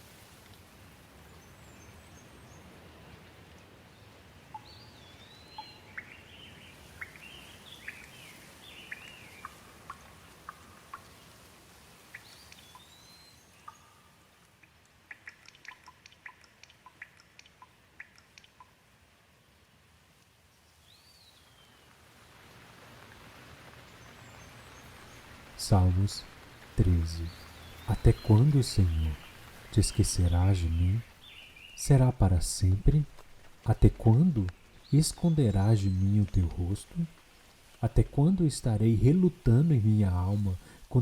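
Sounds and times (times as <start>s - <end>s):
light rain hissing: 0.0s - 41.0s
birds chirping: 4.0s - 11.1s, 12.0s - 18.8s, 23.9s - 41.0s
drip-like ticks: 8.9s - 11.3s, 12.1s - 13.0s, 13.6s - 18.8s.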